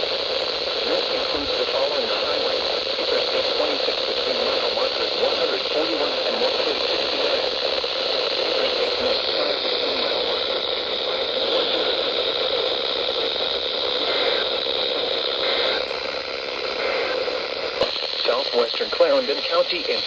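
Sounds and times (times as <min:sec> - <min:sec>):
radio static hiss: 0:00.0 - 0:20.0.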